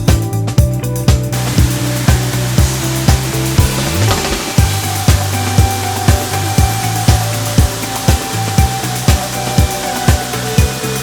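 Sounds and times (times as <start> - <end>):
held bass notes: 0.0 - 11.0
steady drum beat: 0.0 - 11.0.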